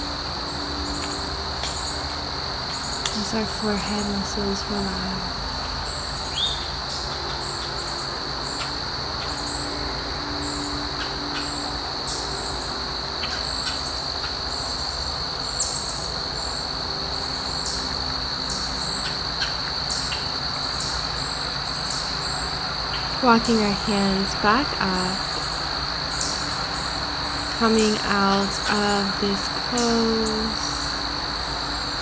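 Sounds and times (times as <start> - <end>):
crickets chirping: 0.0 - 32.0
birds chirping: 21.8 - 31.0.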